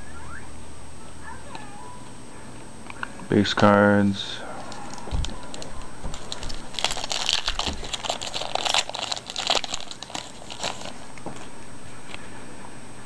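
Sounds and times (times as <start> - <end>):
foil wrapper crinkling: 4.6 - 11.2.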